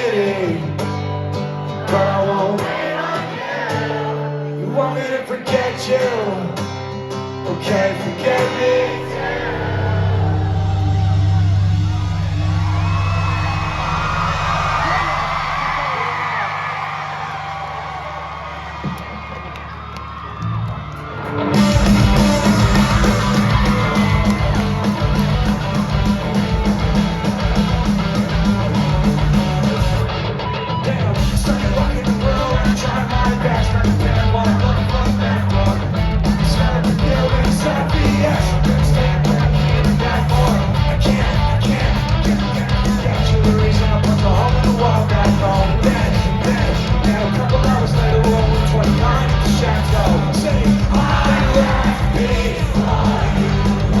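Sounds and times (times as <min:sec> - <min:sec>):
voices singing and yelling: 0:00.0 - 0:00.9, 0:01.6 - 0:06.6, 0:07.4 - 0:54.0
live rock band playing: 0:21.0 - 0:54.0.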